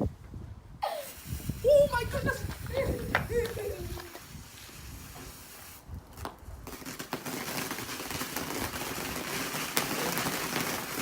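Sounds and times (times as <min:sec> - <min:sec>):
ground firework crackling hiss: 0:00.8 - 0:11.0
firework pops: 0:01.4 - 0:11.0.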